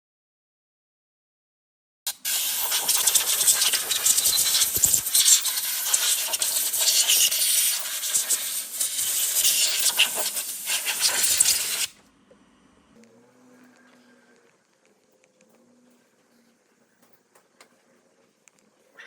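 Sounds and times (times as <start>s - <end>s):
rough fluttering hiss: 2.1s - 12.0s.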